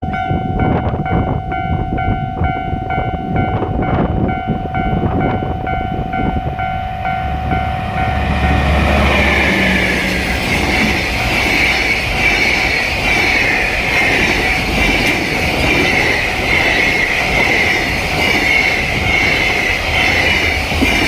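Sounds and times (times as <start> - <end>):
level-crossing alarm ringing: 0.0 - 21.0
rush of passing train: 0.0 - 21.0
deep diesel engine rumble: 6.8 - 12.8.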